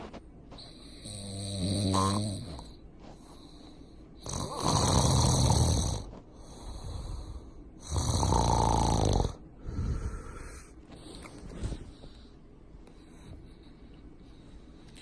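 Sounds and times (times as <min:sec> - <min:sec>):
quiet breaths: 0:00.0 - 0:15.0
man snoring: 0:00.8 - 0:02.7, 0:04.2 - 0:07.2, 0:07.8 - 0:10.6.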